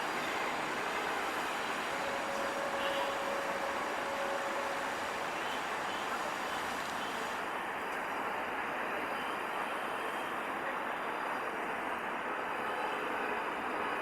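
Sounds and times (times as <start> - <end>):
train wheels on rails: 0.0 - 8.0.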